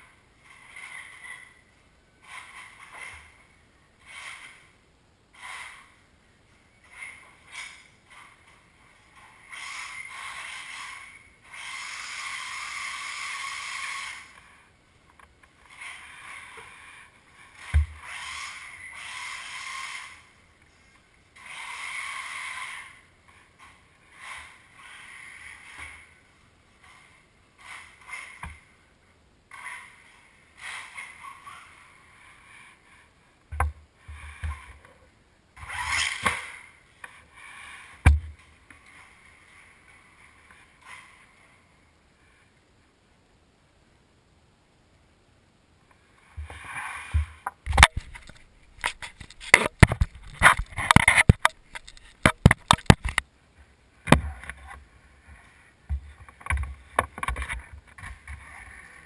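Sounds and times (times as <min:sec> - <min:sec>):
toy car electric motor whining: 0:09.5 - 0:14.4, 0:17.6 - 0:20.3, 0:21.4 - 0:23.0.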